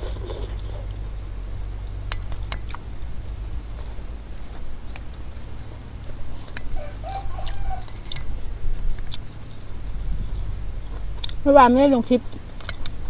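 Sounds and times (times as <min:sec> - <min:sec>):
mouth chewing noises: 0:00.0 - 0:01.0, 0:02.5 - 0:11.4
small mouth clicks: 0:00.0 - 0:01.0.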